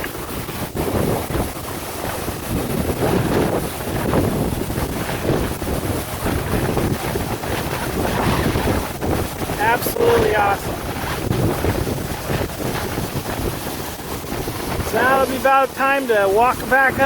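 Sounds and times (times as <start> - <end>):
wind buffeting microphone: 0.0 - 17.0
waterfall rushing: 9.4 - 12.6, 13.3 - 17.0.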